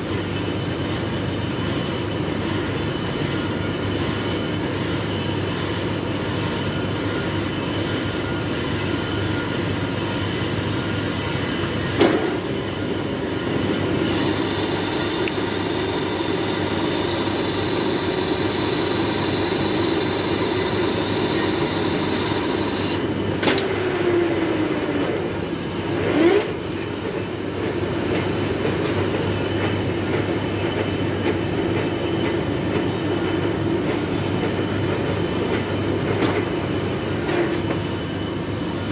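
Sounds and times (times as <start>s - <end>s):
metal lathe running: 7.2s - 30.7s
high metallic squeal: 14.0s - 23.3s.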